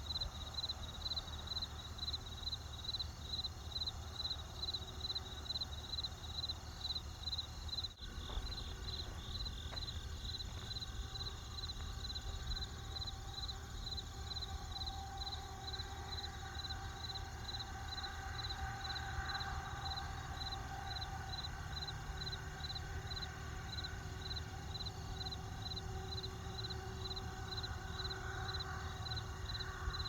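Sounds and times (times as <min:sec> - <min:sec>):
crickets chirping: 0:00.0 - 0:30.0
low steady rumble: 0:06.5 - 0:30.0.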